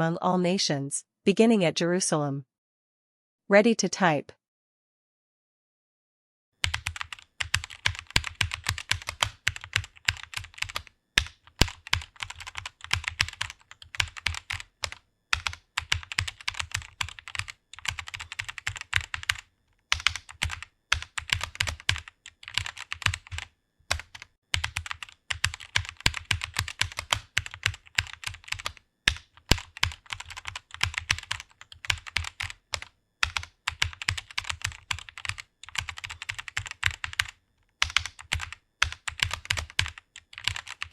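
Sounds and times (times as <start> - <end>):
rapid keyboard typing: 6.6 - 40.9.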